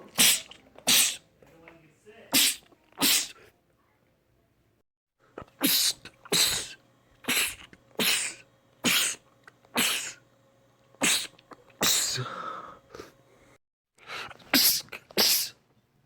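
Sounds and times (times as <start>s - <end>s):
man sneezing: 0.1s - 1.2s, 2.3s - 3.4s, 5.6s - 9.2s, 9.8s - 10.2s, 11.0s - 12.5s, 14.5s - 15.6s.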